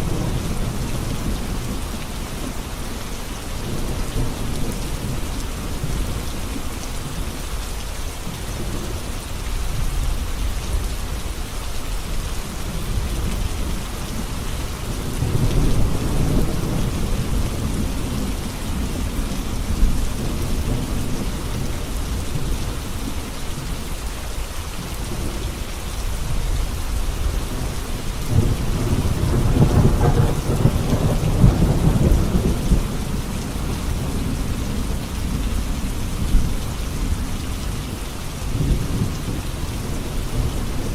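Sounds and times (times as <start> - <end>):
heavy rain on a road: 0.0 - 40.9
rolling thunder: 26.7 - 37.3.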